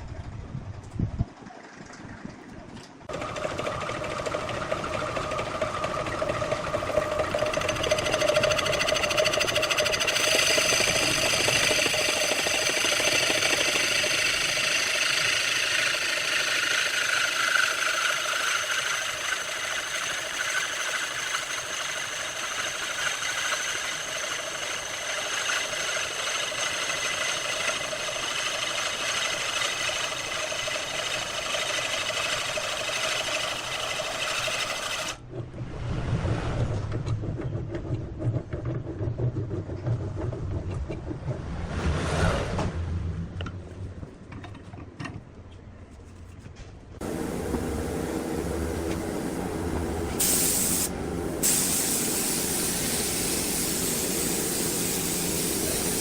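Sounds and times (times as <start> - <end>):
tool hissing on spinning wood: 3.1 - 35.2, 47.0 - 56.0
wood lathe running: 3.1 - 35.2, 47.0 - 56.0.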